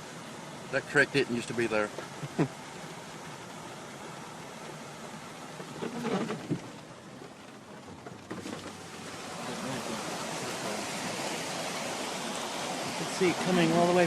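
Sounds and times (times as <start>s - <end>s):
floodwater running off: 0.0s - 14.0s
heavy rain: 8.6s - 14.0s.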